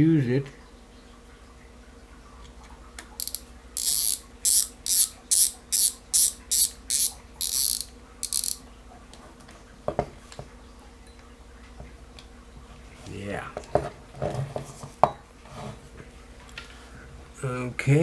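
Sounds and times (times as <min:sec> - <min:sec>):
spinning reel ratcheting: 0:03.2 - 0:08.6.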